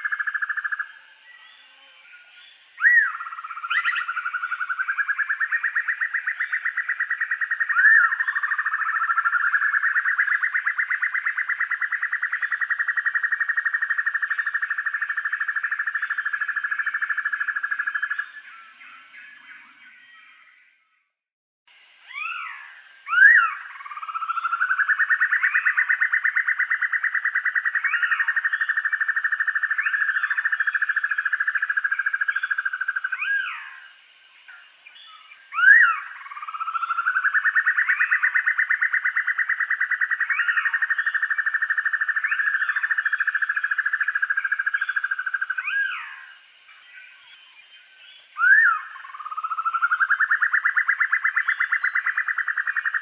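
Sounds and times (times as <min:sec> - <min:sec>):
bird singing fast trill: 0:02.4 - 0:13.3, 0:22.1 - 0:33.8, 0:34.9 - 0:53.0
rising and falling bird calls: 0:22.0 - 0:31.0, 0:34.9 - 0:41.4, 0:48.3 - 0:53.0.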